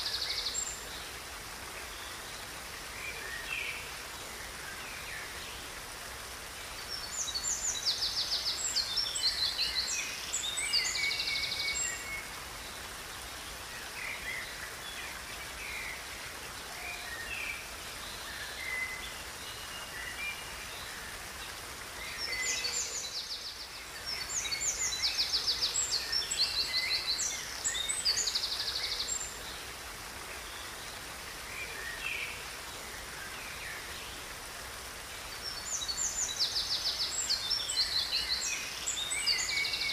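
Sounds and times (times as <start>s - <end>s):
river rushing: 0.0s - 39.9s.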